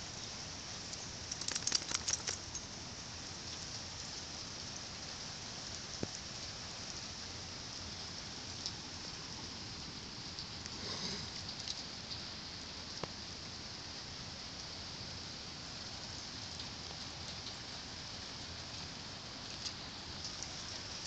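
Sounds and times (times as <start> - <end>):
sharp clicks and crackles: 0.9 - 2.6.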